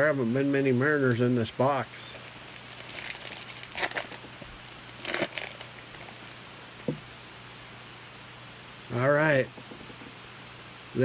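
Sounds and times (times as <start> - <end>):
faint electrical hum: 0.0 - 11.0
trading cards rustling: 2.1 - 6.8.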